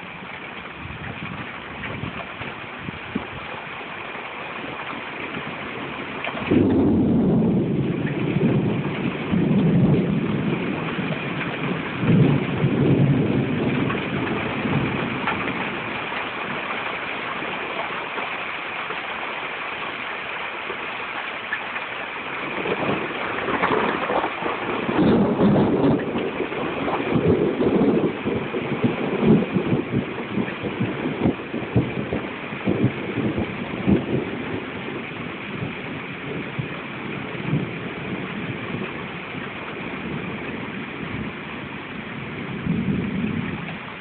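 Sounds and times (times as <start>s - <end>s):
rain hiss: 0.0s - 44.0s
thunder rumbling: 4.6s - 18.2s, 22.2s - 44.0s.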